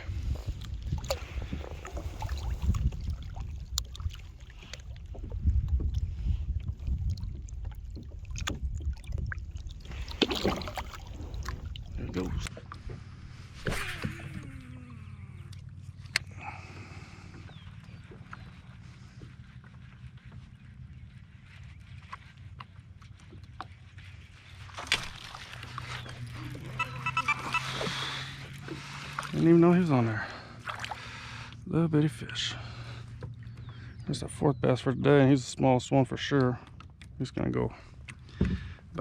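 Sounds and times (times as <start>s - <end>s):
wind rumble on microphone: 0.0s - 14.8s
light water sounds: 0.0s - 39.0s.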